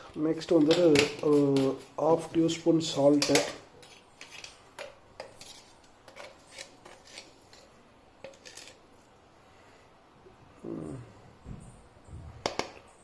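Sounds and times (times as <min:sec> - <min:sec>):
teaspoon clinking and scraping: 0:03.2 - 0:08.8.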